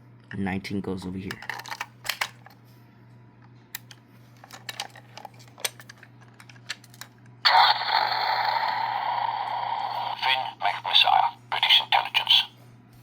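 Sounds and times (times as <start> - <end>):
toy electronic sound effect: 7.5 - 12.5.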